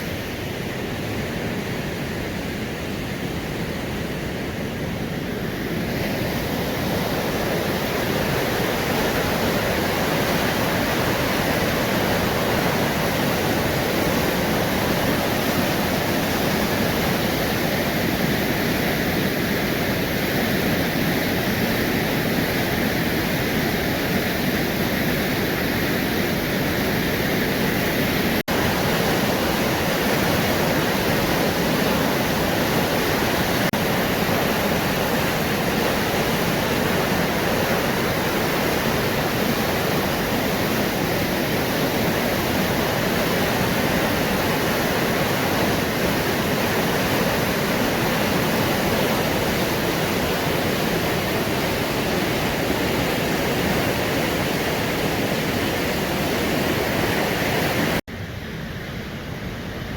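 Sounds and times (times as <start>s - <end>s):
river water rushing: 0.0s - 59.9s.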